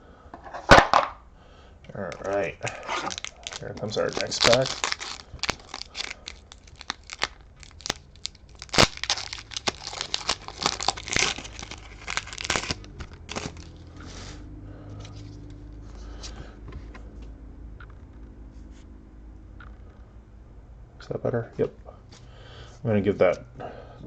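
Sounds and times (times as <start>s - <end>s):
foil wrapper tearing and crinkling: 2.1s - 13.8s.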